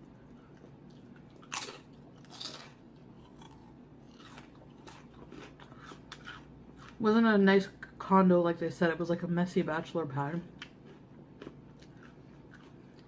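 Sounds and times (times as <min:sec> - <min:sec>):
person chewing food: 0:00.0 - 0:07.0, 0:10.5 - 0:13.0
crunchy bites: 0:00.6 - 0:07.0.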